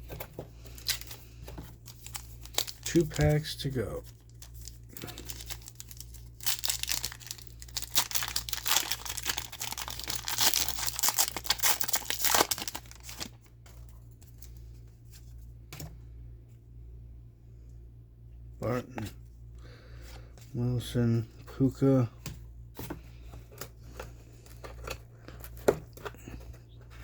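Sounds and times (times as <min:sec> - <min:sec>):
cards being handled: 0:00.0 - 0:15.4
foil pack tearing and crinkling: 0:00.6 - 0:01.2, 0:01.8 - 0:13.4.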